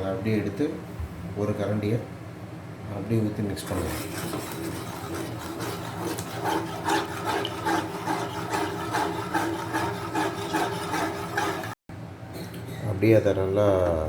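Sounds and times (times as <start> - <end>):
spoon scraping a pan: 3.6 - 11.8.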